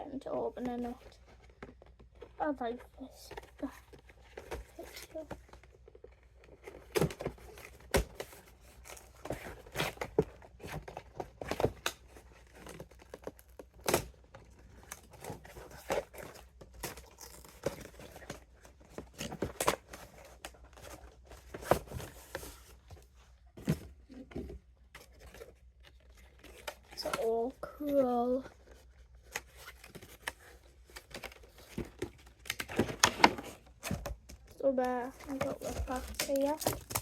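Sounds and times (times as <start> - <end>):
packaging tearing and crinkling: 14.8 - 18.4, 35.2 - 37.0.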